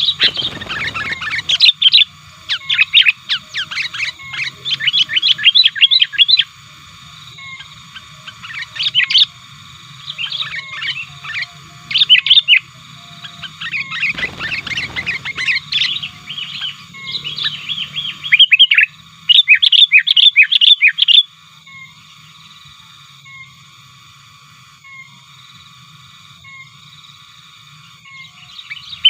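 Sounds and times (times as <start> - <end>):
bird chirping sharply: 13.2 - 21.9.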